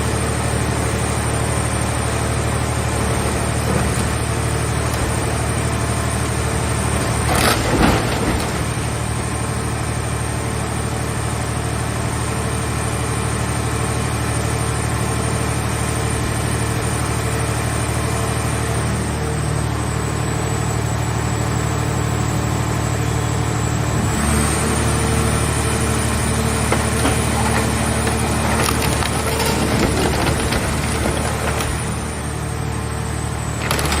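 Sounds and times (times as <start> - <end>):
hydraulic power unit humming and whining: 0.0 - 34.0
scrap metal crushed crackling: 3.2 - 9.8, 25.3 - 32.6, 33.5 - 34.0.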